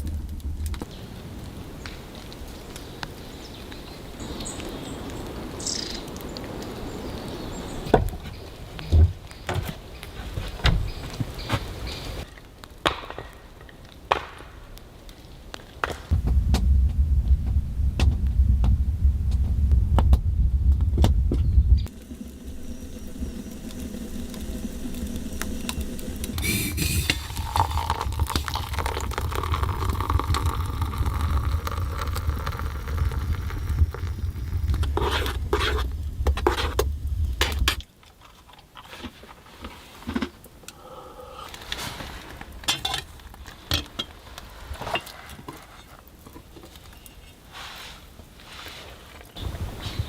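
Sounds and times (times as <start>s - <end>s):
steady low rumble: 0.0s - 1.4s, 16.1s - 37.8s, 49.4s - 50.0s.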